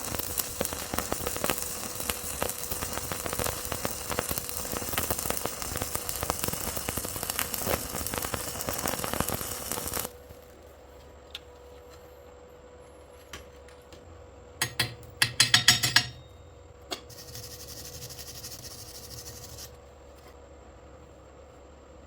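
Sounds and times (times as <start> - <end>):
scratchy scraping of weld: 0.0 - 10.1, 16.9 - 20.4
chipping hammer striking metal: 14.6 - 16.3.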